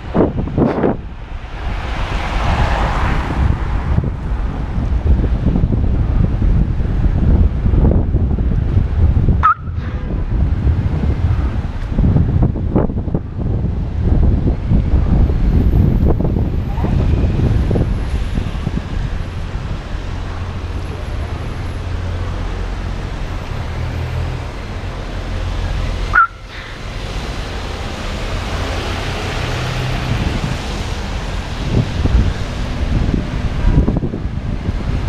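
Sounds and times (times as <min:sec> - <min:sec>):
vehicle engines rumbling: 0:00.0 - 0:35.0
vehicle passing on wet road: 0:01.4 - 0:05.6, 0:15.8 - 0:35.0
sharp high beep: 0:09.4 - 0:09.8, 0:26.2 - 0:26.4
road hiss: 0:15.2 - 0:35.0.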